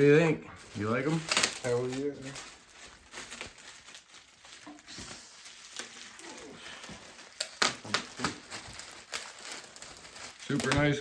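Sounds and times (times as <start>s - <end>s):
packaging rustling: 0.6s - 11.0s.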